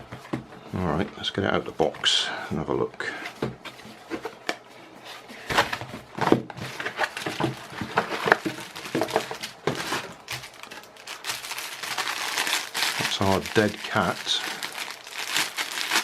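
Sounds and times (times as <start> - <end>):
packaging rustling and crinkling: 5.5 - 16.0.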